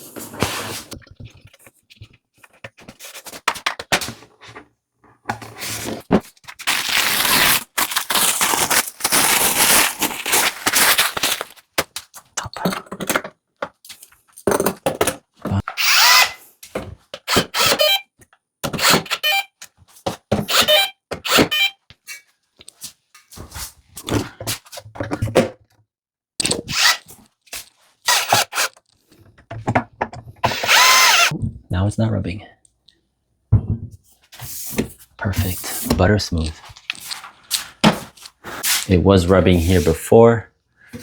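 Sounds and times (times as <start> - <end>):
power drill motor running: 15.8 - 16.4, 17.3 - 18.0, 26.7 - 27.0, 28.1 - 28.7, 30.4 - 31.3.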